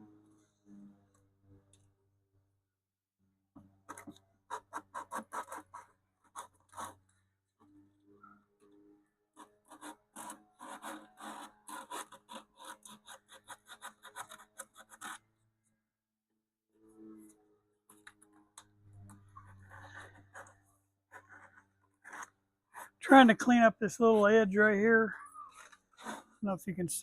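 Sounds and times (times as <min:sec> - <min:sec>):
sandpaper rubbing on wood: 0:09.7 - 0:15.2.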